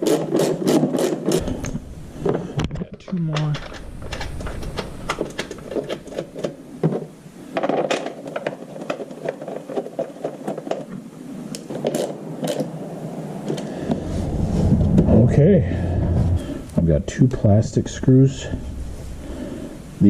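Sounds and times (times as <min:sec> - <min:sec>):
plastic scraping and rattling: 0:00.0 - 0:12.7.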